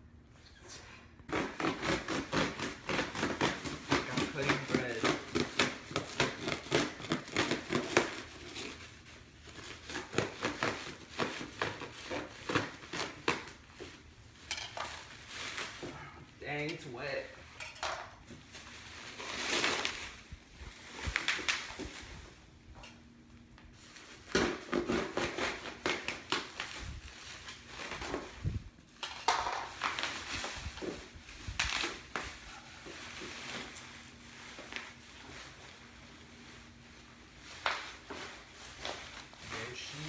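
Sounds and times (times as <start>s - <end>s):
knife cutting wet wrapping: 1.3s - 8.9s, 9.5s - 13.6s, 24.3s - 26.8s
wrapping crinkling and tearing: 1.3s - 16.6s, 18.2s - 22.5s, 23.4s - 40.0s.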